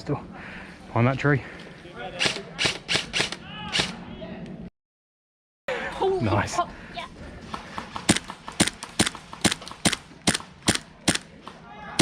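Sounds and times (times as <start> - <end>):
airsoft pistol shots: 8.1 - 11.3.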